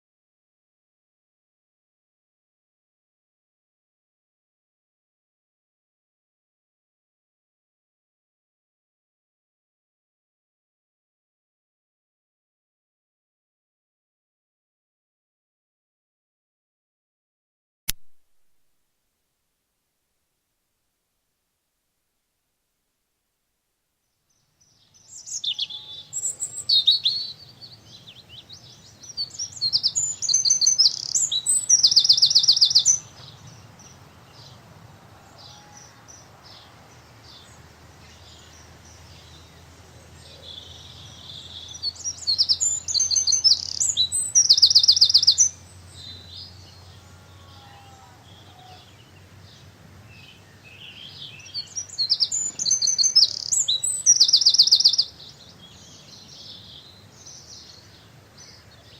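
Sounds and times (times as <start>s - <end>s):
songbird singing with trill: 24.2s - 34.7s, 35.3s - 58.9s.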